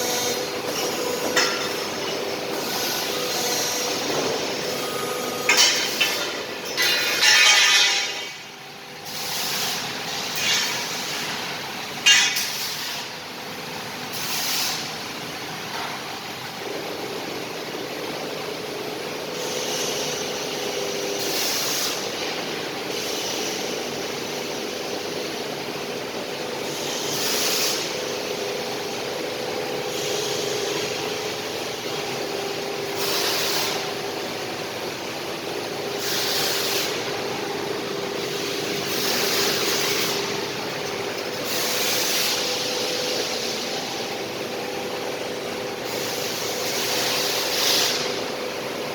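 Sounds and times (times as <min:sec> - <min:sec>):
air hiss bursts: 0:45.8 - 0:48.2.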